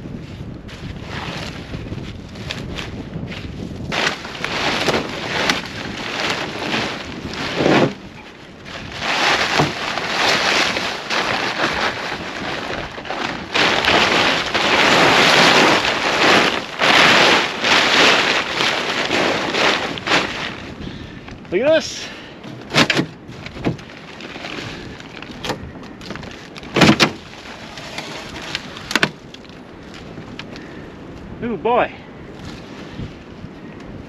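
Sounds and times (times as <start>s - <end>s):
wind buffeting microphone: 0.0s - 34.0s
shovel scraping and crunching snow: 0.3s - 20.8s, 26.7s - 29.1s.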